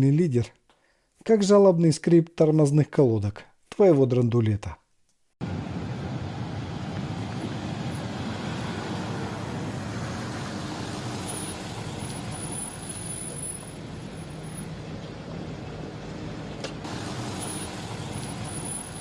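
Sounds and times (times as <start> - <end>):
road noise: 5.4 - 19.0
brakes squealing: 5.9 - 19.0.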